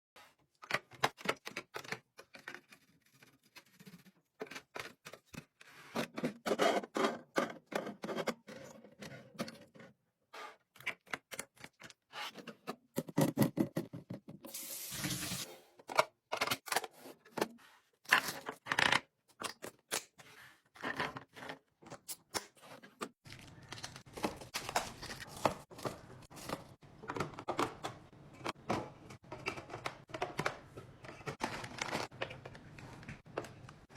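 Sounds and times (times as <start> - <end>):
groceries and packaging handled: 16.4 - 33.9.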